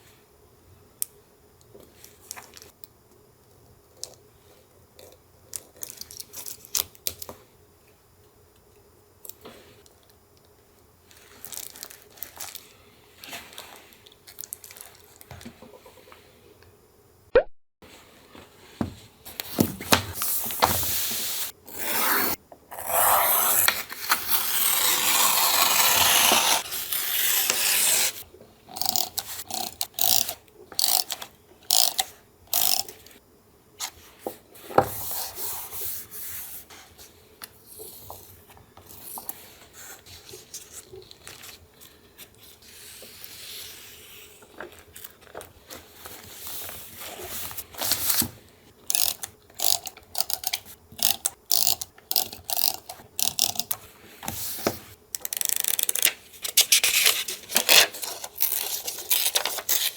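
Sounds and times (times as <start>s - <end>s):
paper rubbing and rustling: 55.9s - 59.9s.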